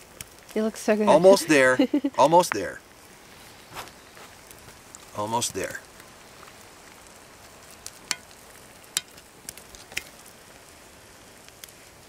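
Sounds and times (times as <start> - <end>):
eggs sizzling in a skillet: 0.0 - 12.0
sharp pops: 3.7 - 10.3.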